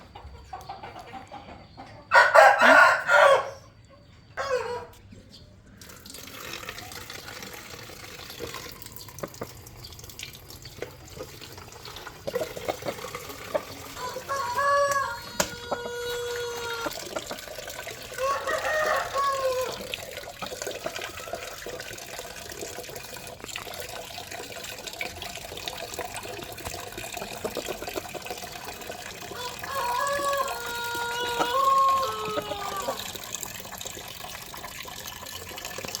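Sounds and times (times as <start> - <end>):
rooster crowing: 2.1 - 3.7, 14.0 - 17.0, 18.1 - 19.9, 29.4 - 33.0
water running and splashing: 5.8 - 36.0.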